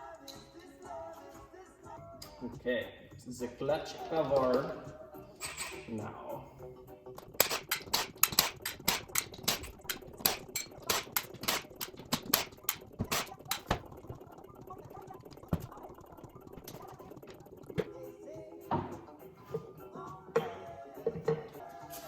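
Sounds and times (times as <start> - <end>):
hand ratchet clicking: 7.2 - 14.0.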